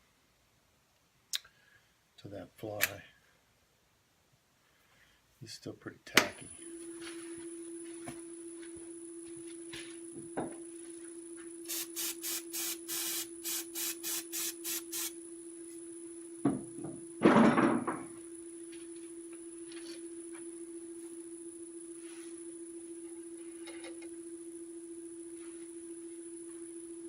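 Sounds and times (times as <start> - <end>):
short hissing bursts: 11.7 - 15.2.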